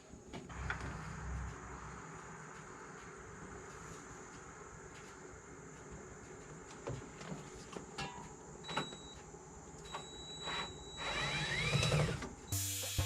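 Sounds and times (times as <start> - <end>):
small electric motor whirring: 10.5 - 12.2
music: 12.5 - 13.0.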